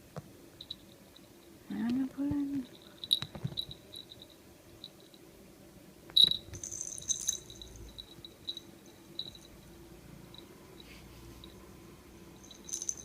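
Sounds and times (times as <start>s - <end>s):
toy ball clicks and tinkling: 6.2s - 9.5s, 12.4s - 13.0s.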